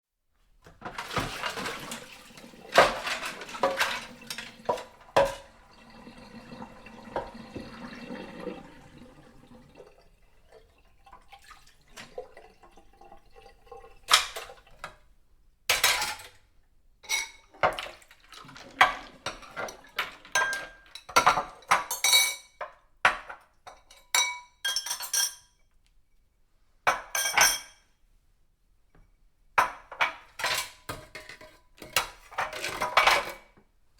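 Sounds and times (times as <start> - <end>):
dishes clinking and clattering: 0.7 - 8.6, 13.9 - 14.9, 15.7 - 16.4, 17.0 - 25.6, 26.9 - 27.8, 29.6 - 33.6
running water: 0.8 - 15.0, 17.0 - 21.2.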